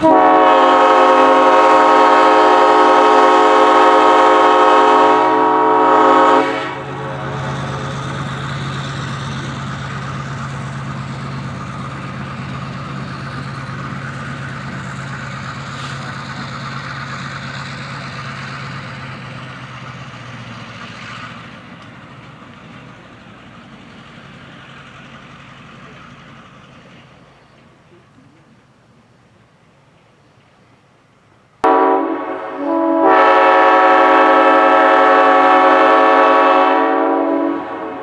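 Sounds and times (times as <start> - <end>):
engine idling with hiss: 7.0 - 31.6.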